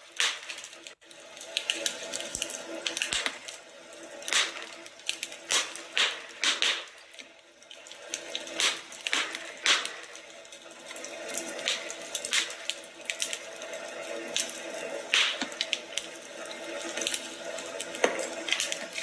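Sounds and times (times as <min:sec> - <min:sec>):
sharp pops from fire: 0:00.0 - 0:01.0, 0:01.6 - 0:13.5, 0:14.4 - 0:16.1
wood fire crackling: 0:00.0 - 0:19.0.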